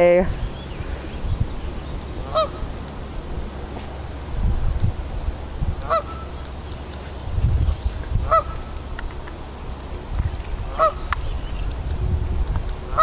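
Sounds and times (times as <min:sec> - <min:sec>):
goose honking: 0:02.2 - 0:02.7, 0:05.8 - 0:06.4, 0:08.2 - 0:08.7, 0:10.6 - 0:11.1.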